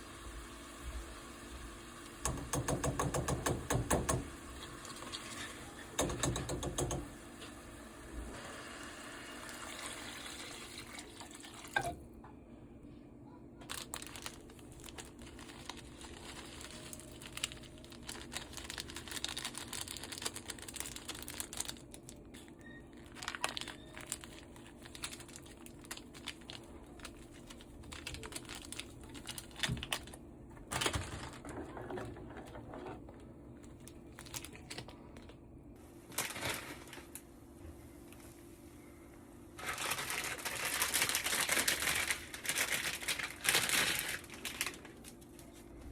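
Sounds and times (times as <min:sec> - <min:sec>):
crinkling and rustling handling: 0:12.9 - 0:38.7, 0:39.6 - 0:45.9.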